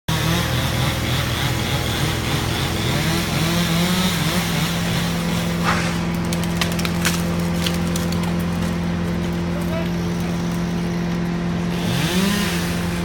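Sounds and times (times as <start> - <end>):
small engine running: 0.1 - 13.0
sharp cracks: 5.5 - 9.4.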